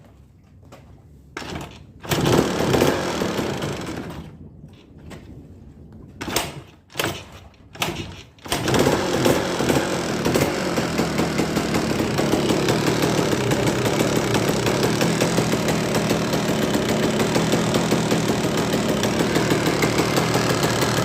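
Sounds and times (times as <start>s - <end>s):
engine knocking: 2.0s - 4.2s, 7.8s - 21.0s
motorcycle engine running: 8.4s - 21.0s.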